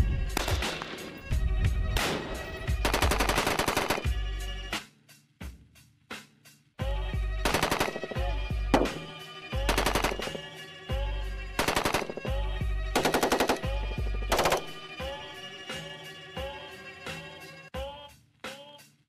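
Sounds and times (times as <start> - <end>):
background music: 0.0 - 19.0
automatic rifle bursts: 2.8 - 4.1, 7.5 - 8.2, 8.8 - 10.4, 11.6 - 12.3, 13.0 - 14.8.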